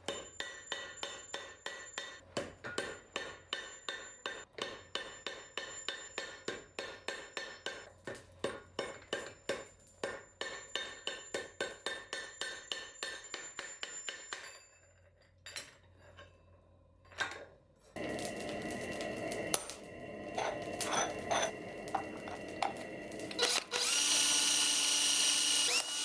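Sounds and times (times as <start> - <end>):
hammer ringing on steel: 0.0 - 7.8.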